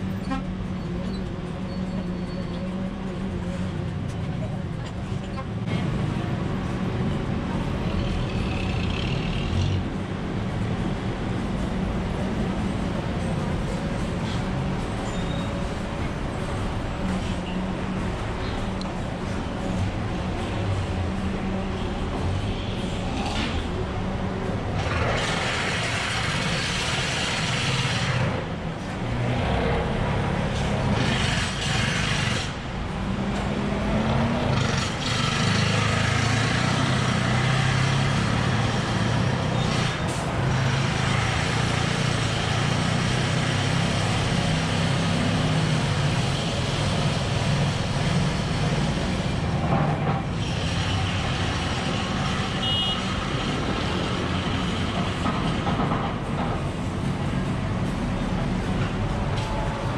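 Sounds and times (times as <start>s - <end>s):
truck and car engines: 0.0s - 59.9s.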